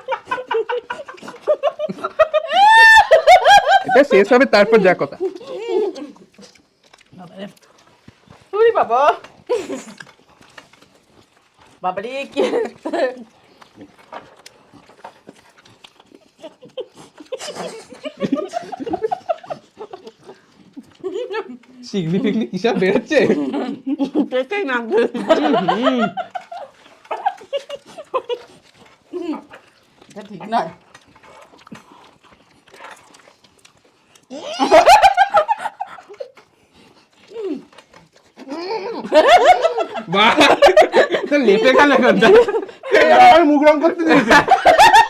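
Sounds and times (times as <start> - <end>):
muffled laughter: 0.0 - 4.1, 16.5 - 20.1, 25.0 - 28.4, 34.3 - 36.4, 38.7 - 43.0, 44.0 - 45.0
wet smacking and chewing: 0.0 - 45.0.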